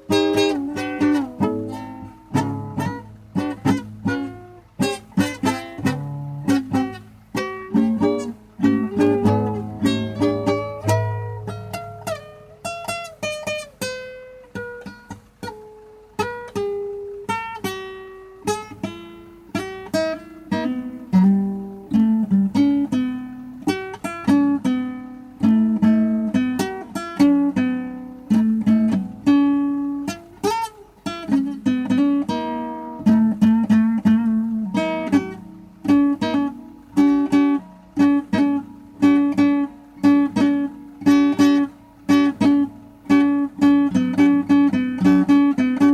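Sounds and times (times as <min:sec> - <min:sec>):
plucked string instrument blues: 0:00.0 - 0:45.9.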